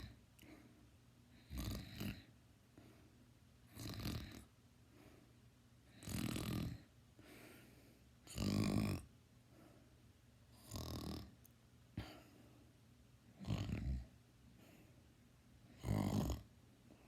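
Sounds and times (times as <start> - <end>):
faint breaths: 0.0 - 8.6, 9.4 - 11.3, 11.9 - 12.8, 13.4 - 17.0
person snoring loudly: 1.4 - 2.3, 3.7 - 4.5, 6.0 - 6.9, 8.3 - 9.1, 10.6 - 11.3, 13.4 - 14.0, 15.8 - 16.5.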